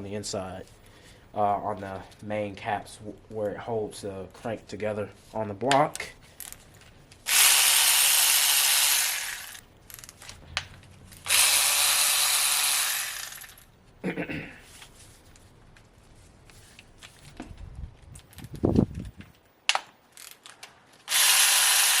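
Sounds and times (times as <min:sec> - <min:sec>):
power tool running: 0:07.3 - 0:09.6, 0:11.2 - 0:13.7, 0:21.1 - 0:22.0.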